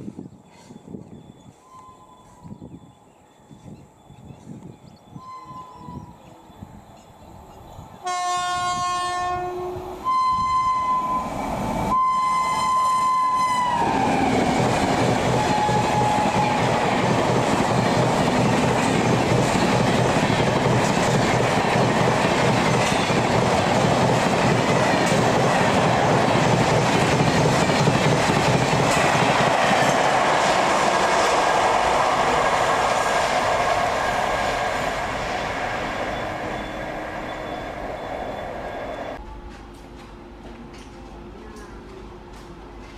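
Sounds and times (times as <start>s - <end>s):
train horn blasts: 8.0s - 11.3s, 11.9s - 13.9s, 15.4s - 16.7s
train wheels clattering past: 12.5s - 42.9s.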